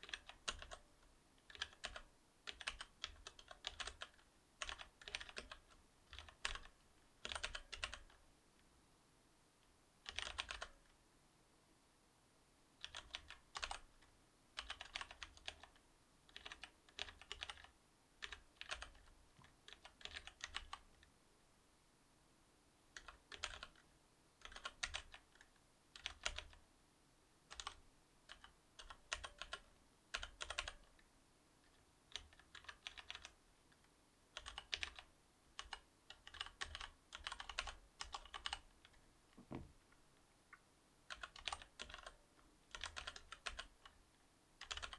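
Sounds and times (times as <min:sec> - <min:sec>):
mechanical keyboard typing: 0:00.0 - 0:00.8, 0:01.4 - 0:08.2, 0:10.0 - 0:10.8, 0:12.8 - 0:13.8, 0:14.6 - 0:21.0, 0:23.0 - 0:23.8, 0:24.4 - 0:26.6, 0:27.5 - 0:31.0, 0:32.1 - 0:33.4, 0:34.4 - 0:39.0, 0:41.1 - 0:44.0, 0:44.6 - 0:44.9.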